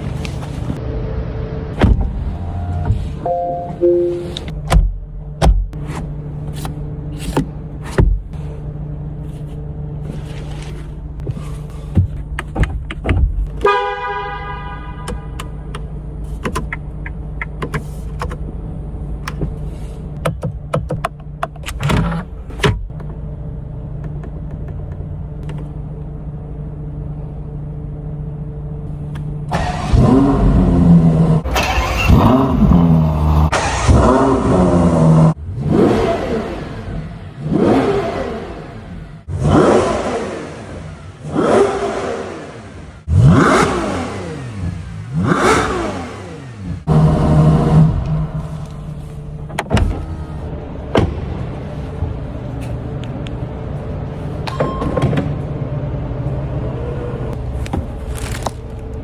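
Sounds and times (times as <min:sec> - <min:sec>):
car engine revving: 0:29.5 - 0:52.5.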